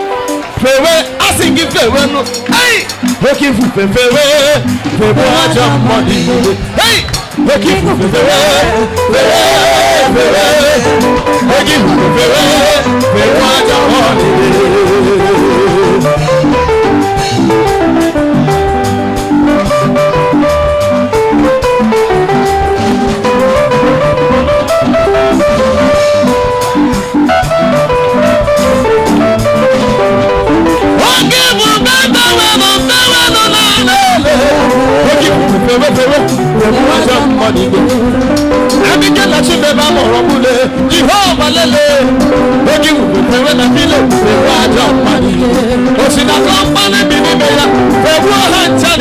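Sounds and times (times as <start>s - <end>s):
drum beat: 0.0s - 49.0s
live worship music: 0.0s - 49.0s
person singing: 3.2s - 18.7s, 28.0s - 49.0s.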